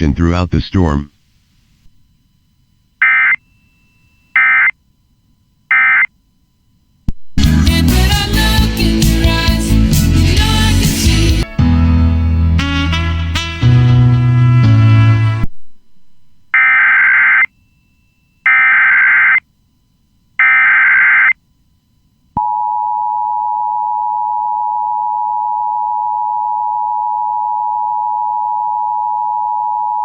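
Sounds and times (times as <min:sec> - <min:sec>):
two-tone alarm: 0:03.0 - 0:04.8, 0:05.7 - 0:06.1, 0:16.5 - 0:19.4, 0:20.4 - 0:21.4
warbling data tone bursts: 0:03.0 - 0:04.8, 0:05.7 - 0:06.1, 0:16.5 - 0:19.4, 0:20.4 - 0:21.4.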